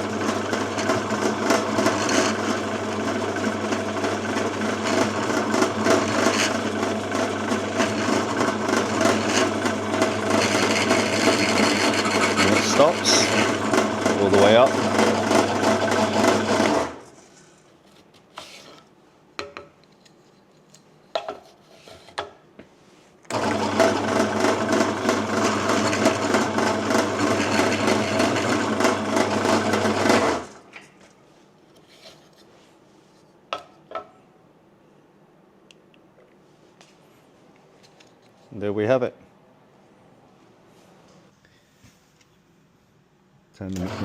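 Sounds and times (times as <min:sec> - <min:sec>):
pillar drill boring into wood: 0:00.0 - 0:17.0, 0:23.3 - 0:30.6, 0:43.8 - 0:44.0.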